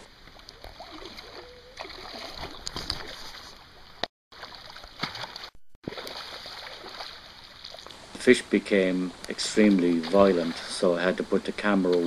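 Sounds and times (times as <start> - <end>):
river water running: 0.0 - 12.0
water splashing: 0.0 - 12.0.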